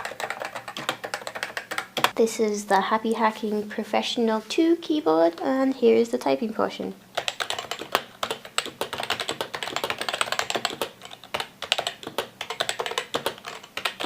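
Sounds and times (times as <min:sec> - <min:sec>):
fast keyboard typing: 0:00.0 - 0:02.2, 0:07.1 - 0:14.0.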